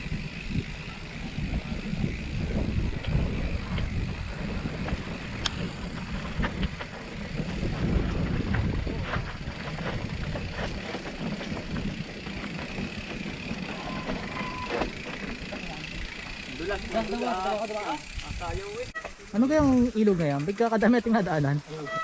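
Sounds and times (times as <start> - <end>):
wind buffeting microphone: 0.0 - 15.1
bike clicks and rattles: 0.0 - 22.0
tyres rolling on trail: 0.0 - 22.0.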